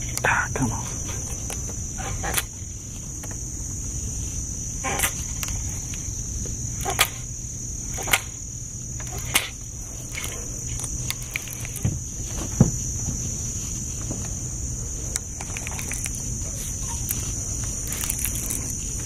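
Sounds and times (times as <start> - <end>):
crickets droning: 0.0 - 19.0
sharp clicks: 1.3 - 2.6, 6.8 - 11.9, 15.1 - 16.2
dull knocks: 11.8 - 13.3.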